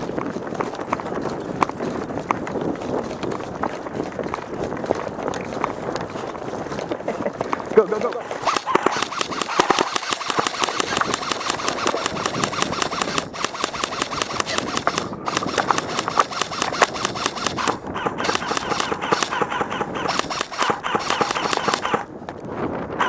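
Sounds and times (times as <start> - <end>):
airsoft guns firing full-auto: 8.4 - 22.1.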